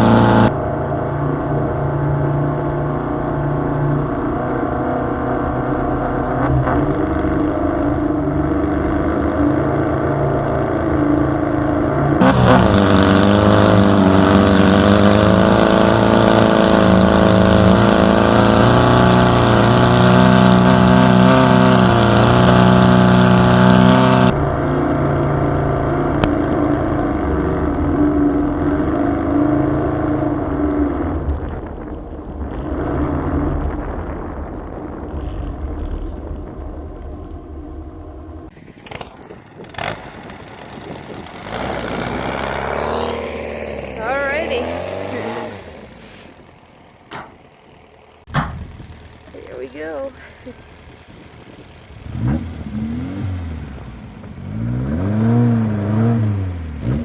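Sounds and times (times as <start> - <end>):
car engine revving under load: 0.0 - 38.6, 39.7 - 57.0.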